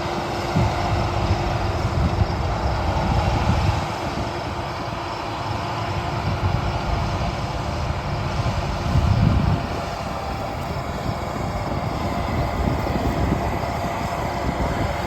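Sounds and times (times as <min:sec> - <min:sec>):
harvest machinery droning: 0:00.0 - 0:15.0.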